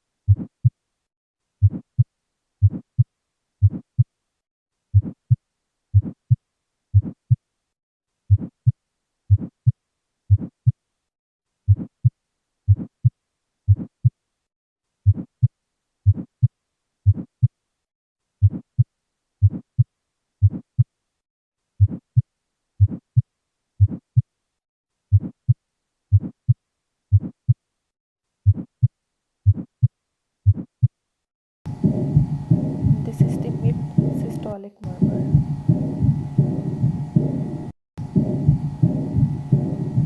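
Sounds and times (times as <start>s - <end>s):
heartbeat through stethoscope: 0.3s - 0.8s, 1.6s - 4.1s, 4.9s - 7.4s, 8.3s - 10.8s, 11.7s - 14.2s, 15.0s - 17.6s, 18.4s - 20.9s, 21.8s - 24.3s, 25.1s - 27.6s, 28.4s - 31.0s, 31.7s - 40.0s.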